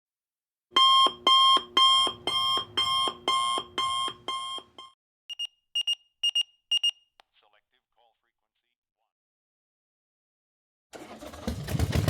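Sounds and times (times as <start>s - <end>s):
short high beeps: 0.8s - 7.0s.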